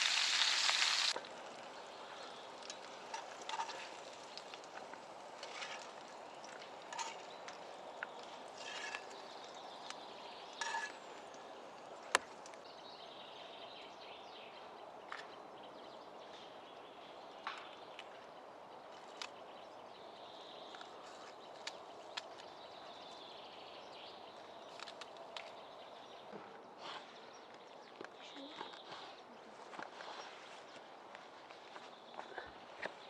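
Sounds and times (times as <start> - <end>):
campfire crackling: 0.0 - 12.6.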